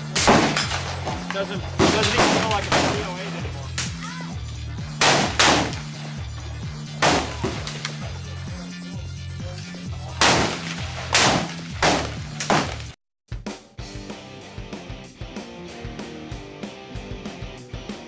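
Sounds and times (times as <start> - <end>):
rifle shots: 0.0 - 4.0, 4.9 - 6.2, 6.9 - 8.1, 10.1 - 13.0
background music: 0.0 - 18.0.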